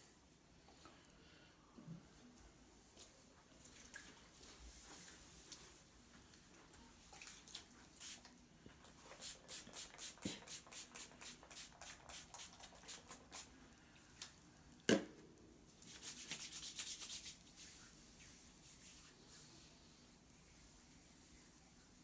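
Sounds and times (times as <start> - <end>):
hands massaging skin: 9.2 - 13.5, 15.9 - 19.4.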